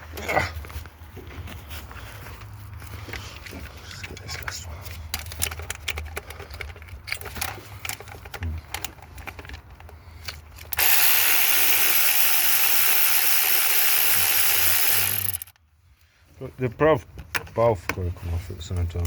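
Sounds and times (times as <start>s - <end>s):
power ratchet running: 10.7s - 15.6s
ratchet clicking: 10.7s - 15.6s.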